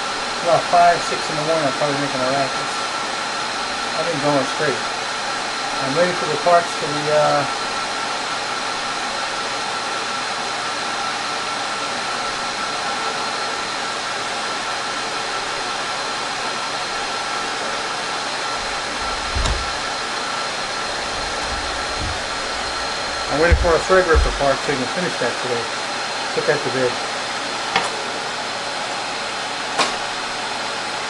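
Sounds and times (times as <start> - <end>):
server cooling fans whooshing: 14.6 - 30.5
low thump: 19.0 - 19.9, 21.2 - 24.5.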